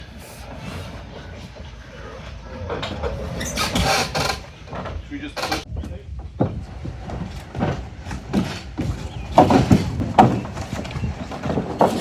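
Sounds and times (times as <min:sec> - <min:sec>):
wooden coop knocking and scraping: 0:02.7 - 0:12.0.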